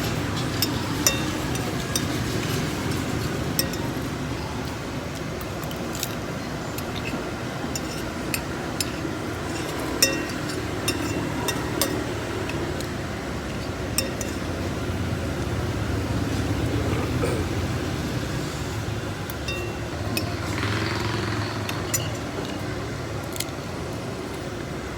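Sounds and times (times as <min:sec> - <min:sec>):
low traffic rumble: 0:00.0 - 0:24.9
cutlery clinking on a plate: 0:00.4 - 0:04.1, 0:06.8 - 0:12.7, 0:13.6 - 0:14.7.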